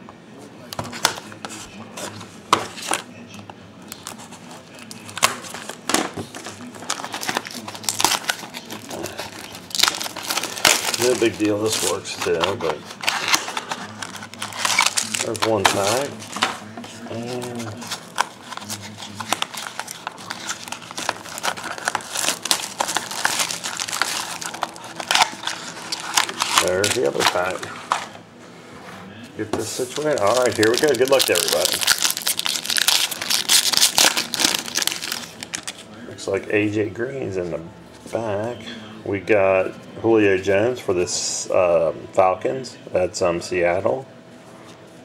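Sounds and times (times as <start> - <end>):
plastic wrap crinkling and tearing: 3.9 - 16.4, 17.1 - 28.0, 29.6 - 35.9.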